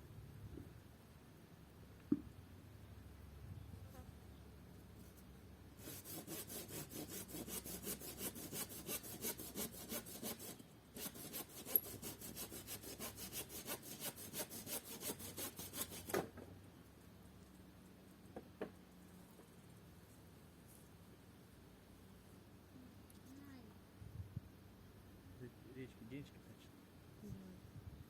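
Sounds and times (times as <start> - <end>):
hand saw cutting wooden board: 5.8 - 16.3.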